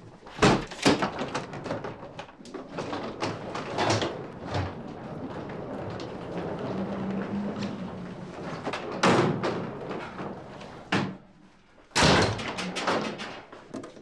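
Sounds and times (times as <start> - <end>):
doors slamming shut: 0.3 - 1.5, 11.9 - 13.6.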